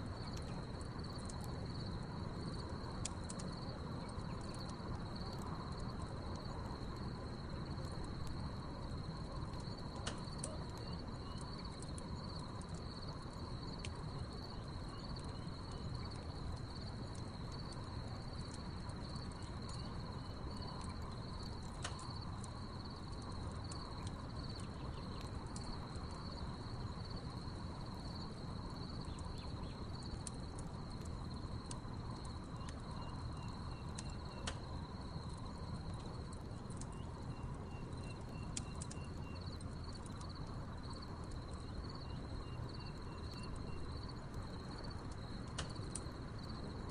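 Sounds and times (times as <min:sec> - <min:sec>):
crickets chirping: 0:00.0 - 0:46.9
wood fire crackling: 0:00.0 - 0:46.9
low insect trill: 0:09.0 - 0:16.8, 0:17.4 - 0:46.8.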